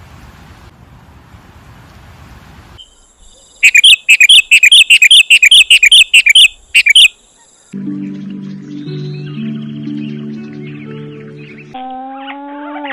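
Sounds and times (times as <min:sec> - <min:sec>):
bird chirping rapidly: 0:02.8 - 0:07.2.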